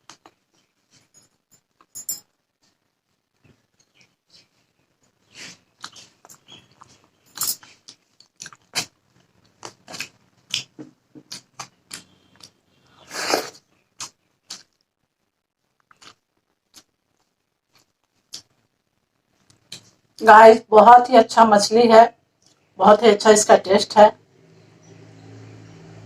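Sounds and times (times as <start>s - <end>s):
wet chewing: 5.3s - 14.9s, 15.8s - 18.6s
mouth smacks and clicks: 5.4s - 7.1s, 7.8s - 14.9s, 15.8s - 18.6s, 19.4s - 20.0s.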